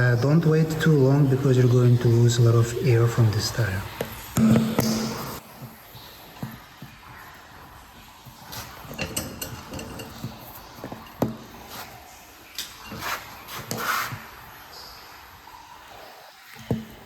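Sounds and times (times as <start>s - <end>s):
metal tools clicking and knocking: 8.8s - 11.6s.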